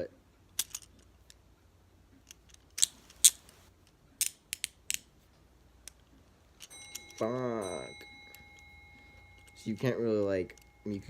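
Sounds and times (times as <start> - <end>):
handcuffs ratchet clicking: 0.6 - 1.4, 2.2 - 5.1, 5.8 - 11.0.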